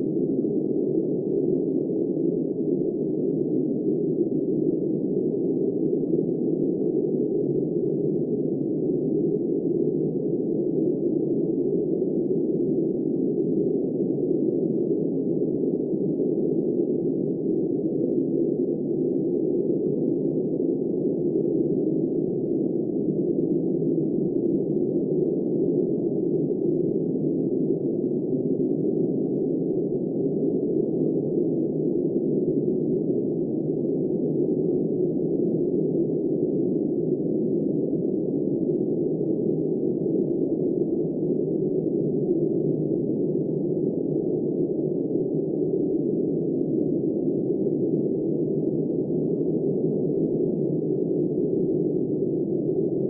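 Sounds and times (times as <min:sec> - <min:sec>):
muffled blizzard wind howling: 0:00.0 - 0:53.0.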